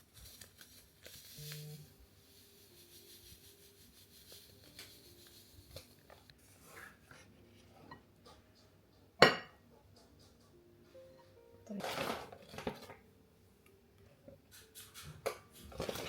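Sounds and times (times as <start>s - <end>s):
dishes and utensils clinking: 7.8s - 11.1s, 11.7s - 13.0s.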